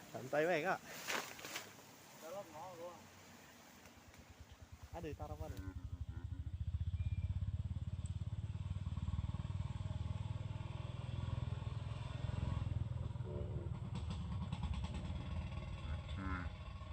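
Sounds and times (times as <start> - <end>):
small engine running: 4.3 - 11.0.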